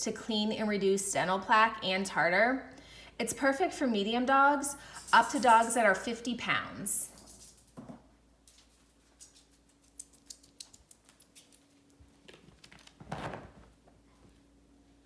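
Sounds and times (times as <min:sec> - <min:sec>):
small objects clicking and tapping: 0:08.5 - 0:11.7.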